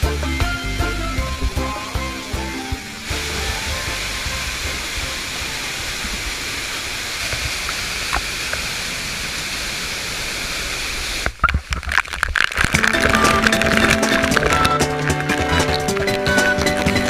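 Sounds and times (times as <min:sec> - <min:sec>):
background music: 0:00.0 - 0:05.8, 0:12.8 - 0:17.0
waterfall rushing: 0:00.0 - 0:11.4, 0:12.5 - 0:17.0.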